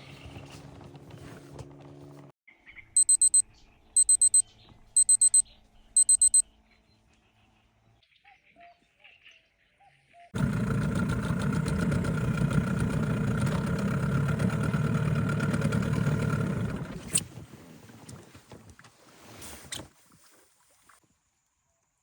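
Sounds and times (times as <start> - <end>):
boat engine running: 0.0 - 2.3, 10.4 - 17.3.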